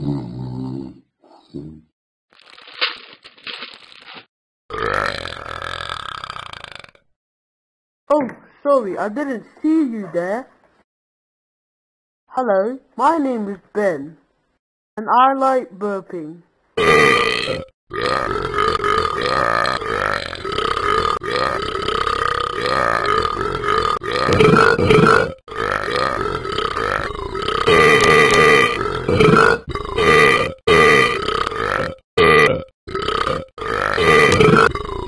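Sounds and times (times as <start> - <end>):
long drawn-out burps: 4.7 - 7.1, 16.8 - 35.0.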